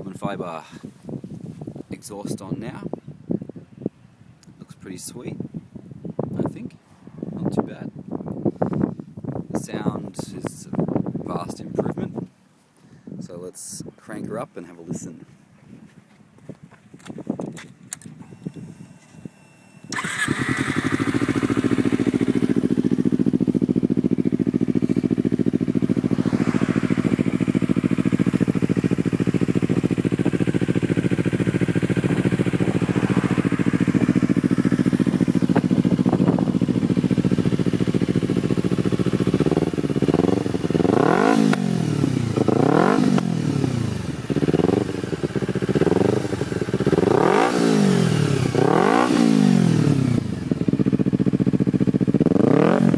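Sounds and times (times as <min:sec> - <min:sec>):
motorcycle engine idling: 0:19.9 - 0:52.9
motorcycle engine revving: 0:19.9 - 0:52.9.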